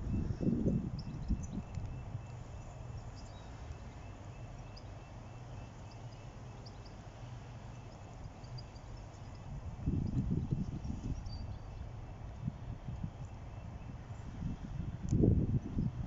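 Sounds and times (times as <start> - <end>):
bird chirps: 0.0 - 11.9.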